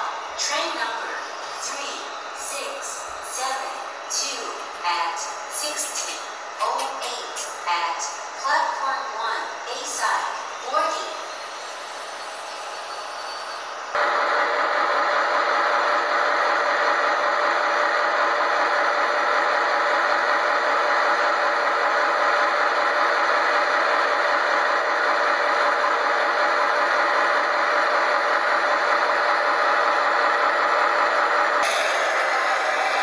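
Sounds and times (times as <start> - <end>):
train rattling and clattering: 5.9 - 8.2.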